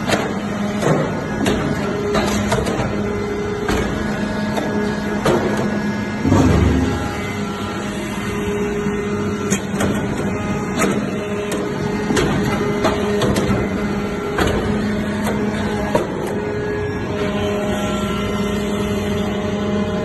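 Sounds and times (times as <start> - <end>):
baler machine hum: 0.0 - 20.0
sharp machine knocks: 5.2 - 7.5.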